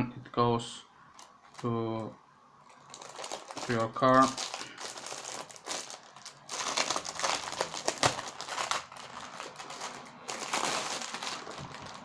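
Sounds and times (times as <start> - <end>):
packaging crinkling: 2.7 - 12.0.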